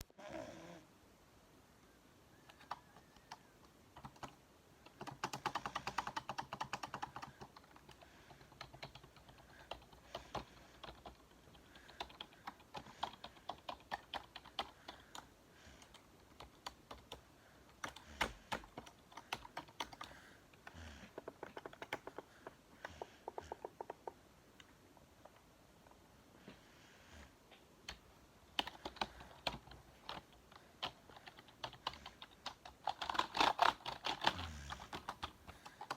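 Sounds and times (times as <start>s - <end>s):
keyboard typing clicks: 2.5s - 15.2s.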